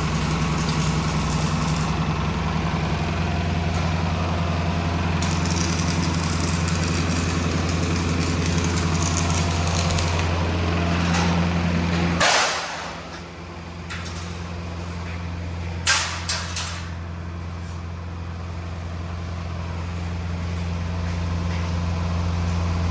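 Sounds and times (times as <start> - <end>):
engine idling: 0.0 - 22.9
sharp metallic clanks: 11.1 - 13.3.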